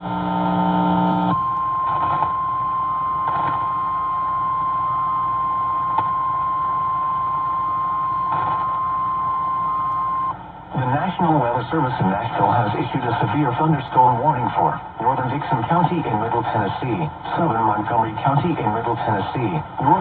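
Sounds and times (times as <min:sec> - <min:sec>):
radio static hiss: 0:00.0 - 0:02.4, 0:07.8 - 0:20.0.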